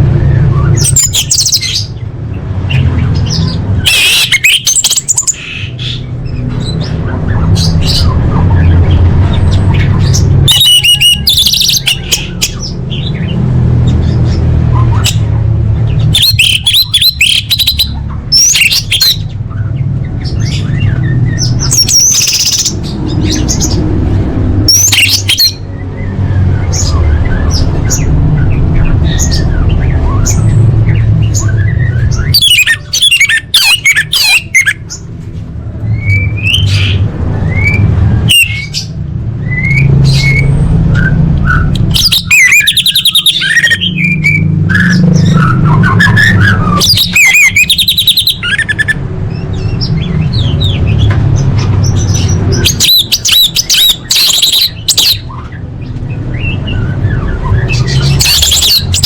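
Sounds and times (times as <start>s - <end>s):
thrush singing: 0.0s - 59.0s.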